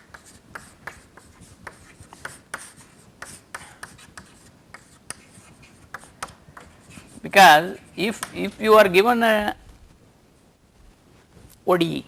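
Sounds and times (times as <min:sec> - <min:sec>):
pen scratching on paper: 0:00.0 - 0:08.8.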